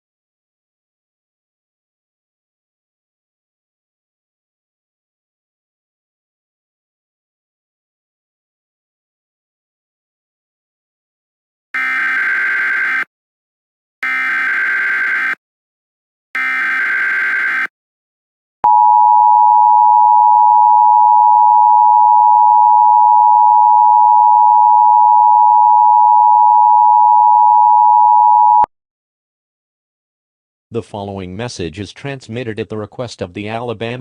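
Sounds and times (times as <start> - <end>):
loud two-tone beep: 18.6 - 28.7.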